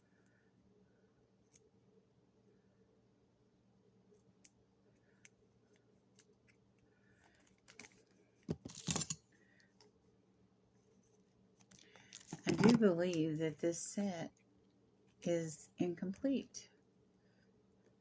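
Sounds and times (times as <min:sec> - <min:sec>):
faint clicks of small items: 0:04.1 - 0:10.0, 0:11.0 - 0:13.2.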